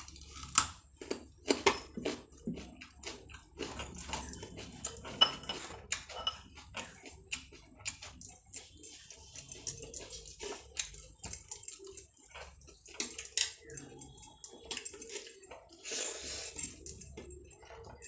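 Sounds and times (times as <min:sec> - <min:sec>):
clinks against a plate: 0:05.1 - 0:06.6
chewing and mouth smacks: 0:05.8 - 0:16.0.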